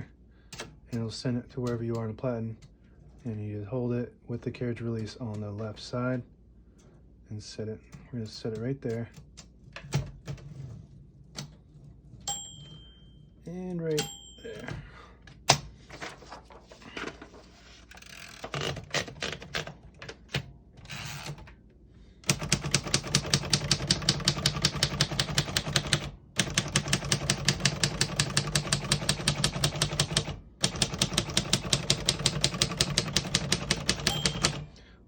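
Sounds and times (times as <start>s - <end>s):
fast typewriter typing: 22.2s - 34.6s.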